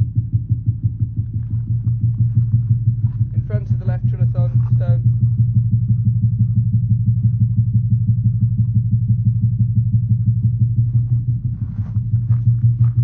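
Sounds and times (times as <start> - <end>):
fast drum beat over loudspeaker: 3.2 - 5.2.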